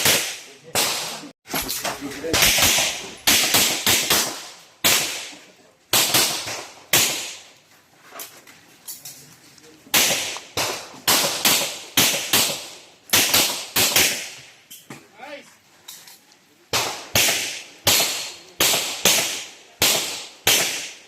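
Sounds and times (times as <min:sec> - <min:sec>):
gunshots: 0:00.0 - 0:07.5, 0:09.9 - 0:14.5, 0:16.7 - 0:21.0.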